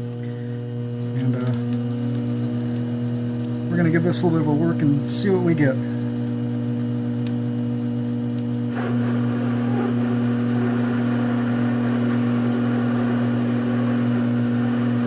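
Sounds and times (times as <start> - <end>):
lathe motor hum: 8.4 - 15.0
tool cutting metal hiss: 8.7 - 15.0.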